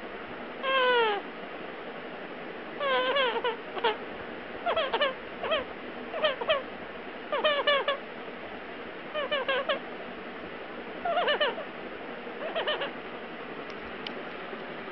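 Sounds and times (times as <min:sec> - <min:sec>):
parrot squeaking softly: 0:00.6 - 0:01.2, 0:02.8 - 0:04.0, 0:04.6 - 0:06.7, 0:07.3 - 0:08.0, 0:09.2 - 0:09.8, 0:11.0 - 0:11.7, 0:12.4 - 0:13.0.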